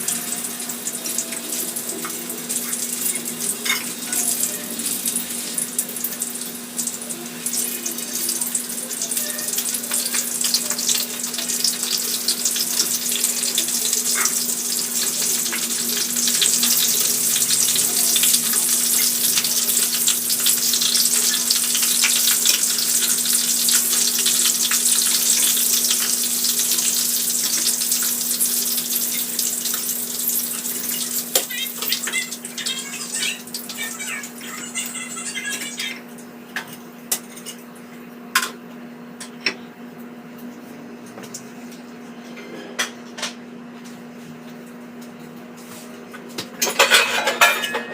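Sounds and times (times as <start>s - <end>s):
food sizzling in hot oil: 0.0s - 36.0s.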